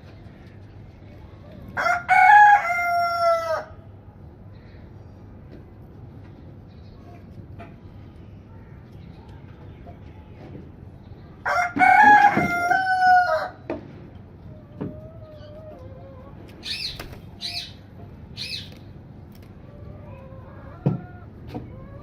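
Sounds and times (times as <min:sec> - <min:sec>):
rooster crowing: 0:01.8 - 0:03.8, 0:11.4 - 0:13.6
high-pitched bird calls: 0:16.6 - 0:18.9.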